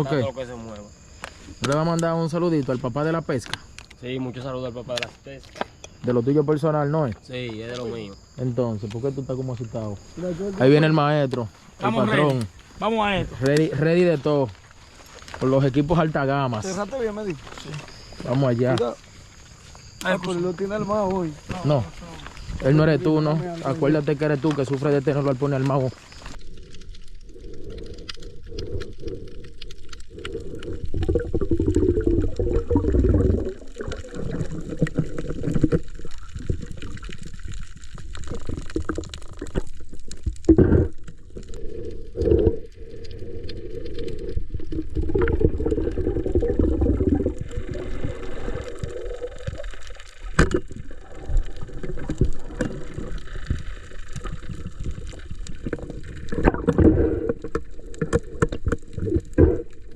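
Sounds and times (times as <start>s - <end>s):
water sloshing and bubbling: 14.4s - 59.9s.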